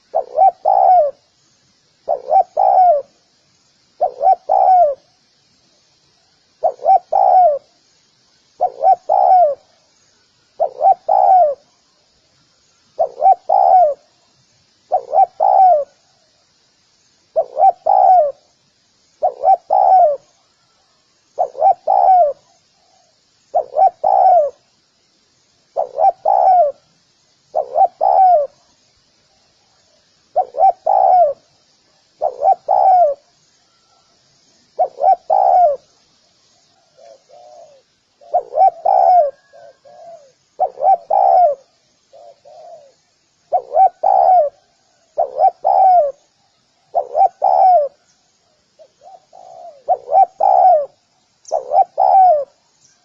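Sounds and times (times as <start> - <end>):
dove cooing: 0.0 - 1.2, 2.0 - 3.2, 4.0 - 5.1, 6.6 - 7.7, 8.6 - 9.7, 10.6 - 11.7, 13.0 - 14.1, 14.9 - 16.1, 17.3 - 18.5, 19.2 - 20.4, 21.4 - 24.6, 25.7 - 26.8, 27.5 - 28.7, 30.3 - 31.5, 32.2 - 34.0, 34.8 - 35.9, 36.8 - 48.1, 48.8 - 52.7.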